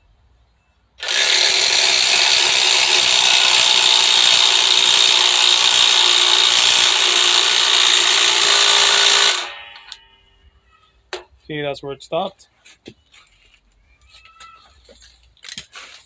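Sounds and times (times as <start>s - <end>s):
impact driver hammering: 1.0s - 10.0s.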